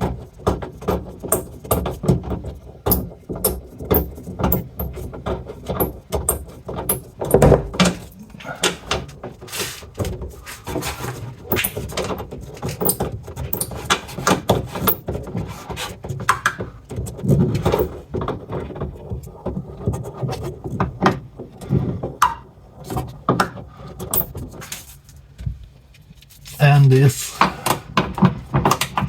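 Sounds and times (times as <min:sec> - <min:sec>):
hand tools clicking and knocking: 0:00.1 - 0:10.8, 0:11.5 - 0:15.4, 0:16.3 - 0:18.4, 0:23.4 - 0:24.4.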